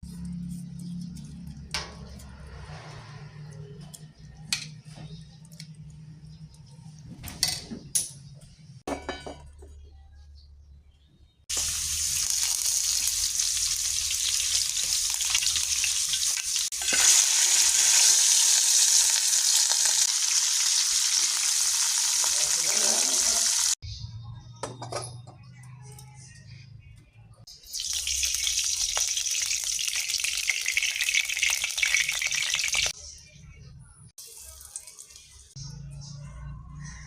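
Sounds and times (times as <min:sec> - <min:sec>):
food frying in hot oil: 0:11.5 - 0:23.8, 0:27.6 - 0:32.9.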